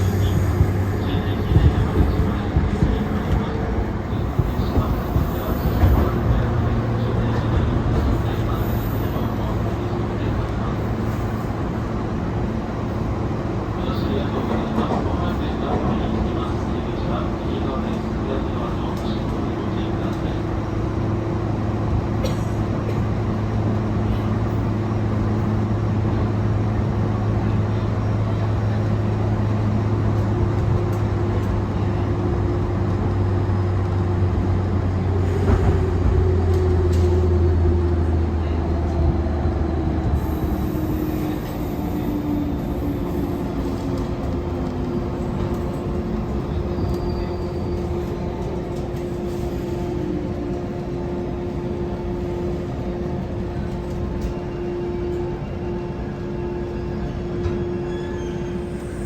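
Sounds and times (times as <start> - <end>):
train rolling rumble: 0.0 - 59.0.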